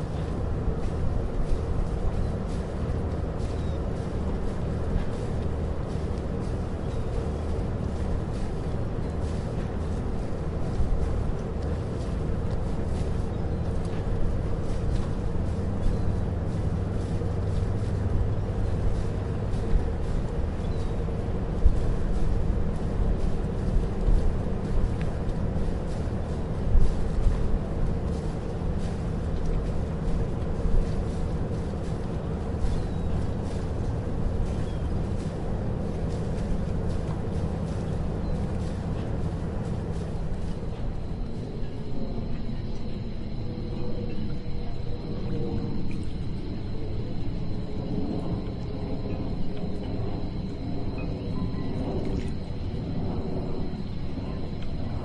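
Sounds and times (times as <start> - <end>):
boat engine droning: 0.0 - 55.0.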